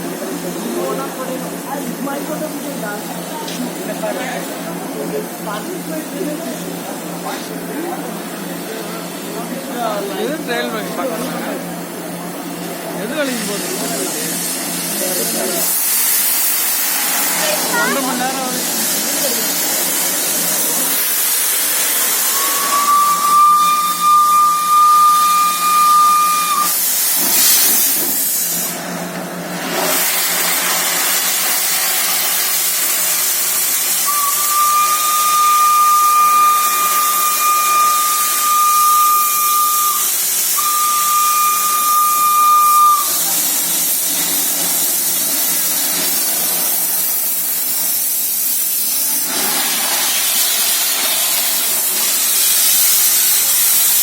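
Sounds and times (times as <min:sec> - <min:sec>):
hiss of escaping steam: 0:13.2 - 0:28.9, 0:29.6 - 0:54.0
steam locomotive whistle: 0:19.4 - 0:28.1, 0:32.6 - 0:44.0.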